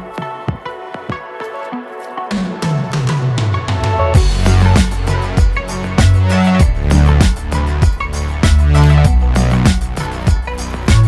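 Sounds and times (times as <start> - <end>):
electronic music with drums: 0.0 - 11.0
heavy bass line: 4.0 - 11.0.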